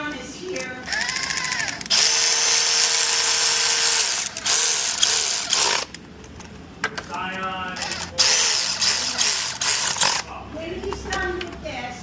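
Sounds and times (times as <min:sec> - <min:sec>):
power tool whining: 0:00.8 - 0:06.0, 0:07.8 - 0:10.3.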